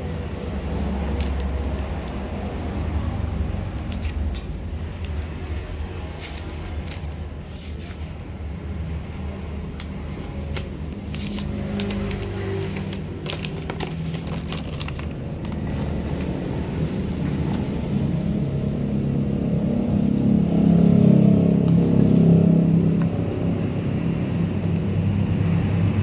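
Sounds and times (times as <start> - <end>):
packaging crackling and scraping: 0.2 - 5.4, 10.1 - 16.7.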